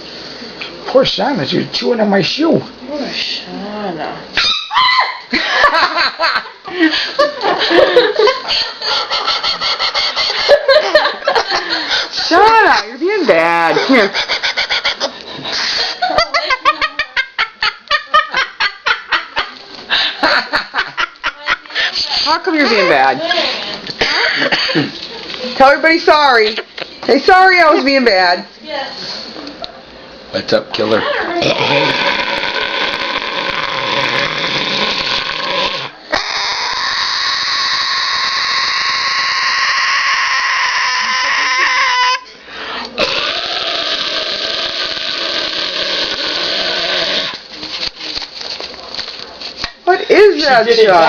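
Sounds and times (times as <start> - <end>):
cockatoo screeching: 4.4 - 5.3, 31.4 - 42.3
person laughing: 38.4 - 42.2.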